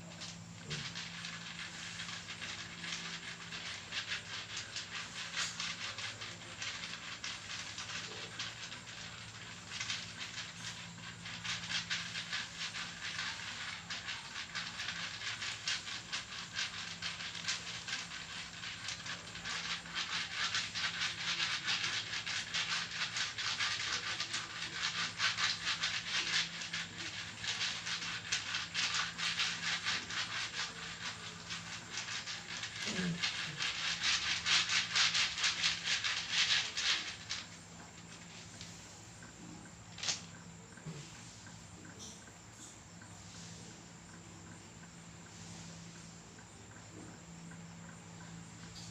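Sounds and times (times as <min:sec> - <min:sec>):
seeds rattling and clicking: 0:00.0 - 0:48.9.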